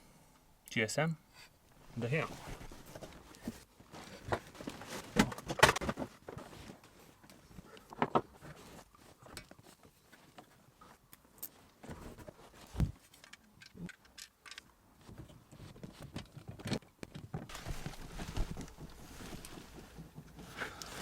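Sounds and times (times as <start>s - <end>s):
rustling: 1.7s - 13.4s, 17.4s - 21.0s.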